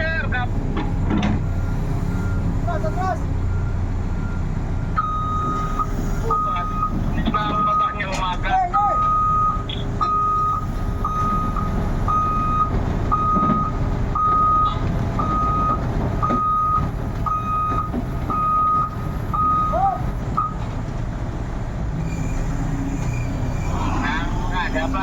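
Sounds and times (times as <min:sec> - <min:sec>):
low engine rumble: 0:00.0 - 0:25.0
reversing alarm beeping: 0:01.5 - 0:20.6.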